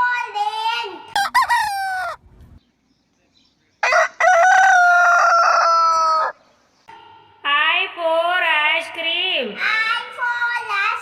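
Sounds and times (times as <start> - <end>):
rooster crowing: 1.2 - 2.2, 3.8 - 6.4.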